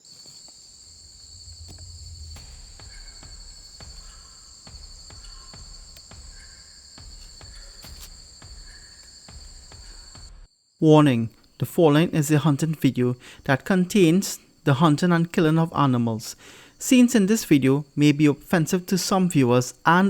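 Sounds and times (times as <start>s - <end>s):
insects chirring: 0.0s - 20.0s
low rumble: 0.8s - 10.5s.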